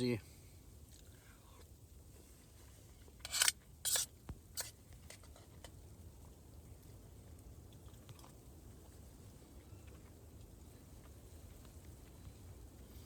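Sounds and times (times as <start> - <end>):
faint clicks of eating: 0.9 - 1.8, 4.3 - 12.9
rustling or scraping noises: 2.1 - 5.8.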